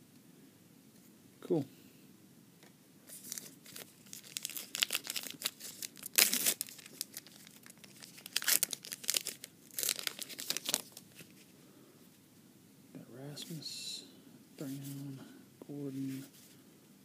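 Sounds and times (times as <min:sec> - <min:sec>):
foil wrapper tearing and crinkling: 0:03.1 - 0:11.0.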